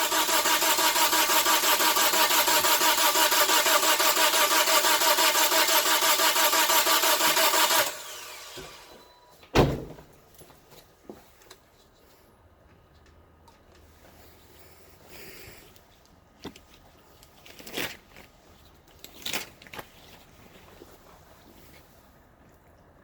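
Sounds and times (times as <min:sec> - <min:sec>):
car engine cranking on starter: 0:00.0 - 0:09.0.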